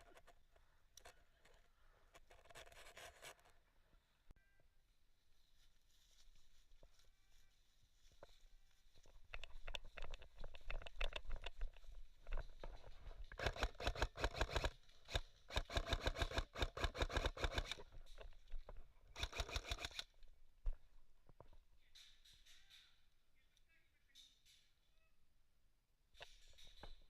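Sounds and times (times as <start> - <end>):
airsoft gun rapid clicking shots: 13.3 - 17.8, 19.2 - 20.1.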